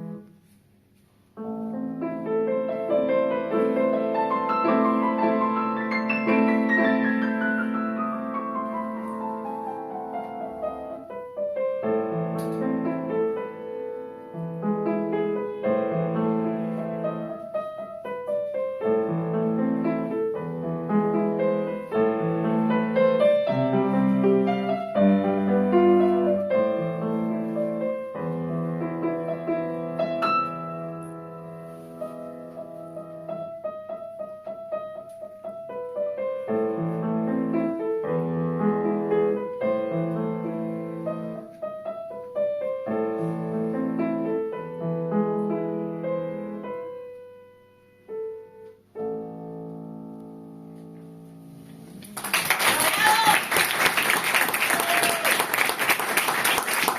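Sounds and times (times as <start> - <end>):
solo piano classical piece: 0.0 - 52.1.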